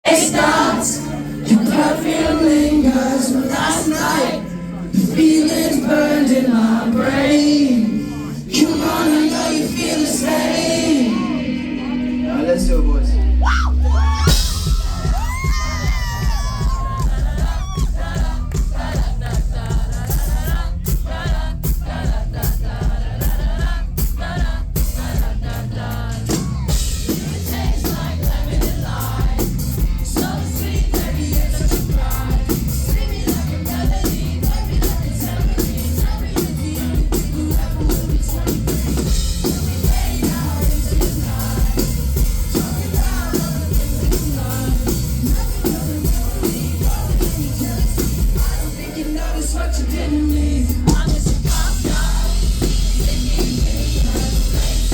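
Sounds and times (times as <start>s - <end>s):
person singing: 0.0s - 21.3s, 30.2s - 54.9s
pop-rock band playing: 0.0s - 54.9s
drum beat: 13.8s - 54.9s.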